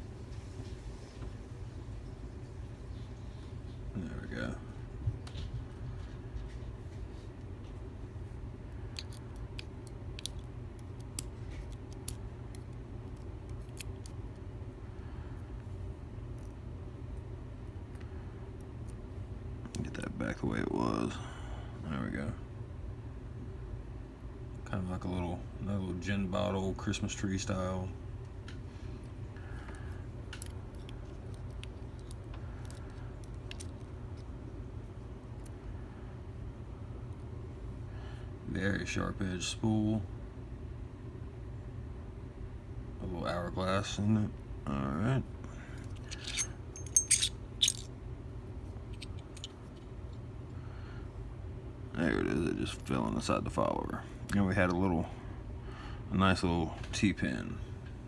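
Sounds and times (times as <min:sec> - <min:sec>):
steady low hum: 0:00.0 - 0:58.0
small lock parts clicking: 0:09.0 - 0:14.4, 0:30.3 - 0:34.3, 0:45.8 - 0:47.9.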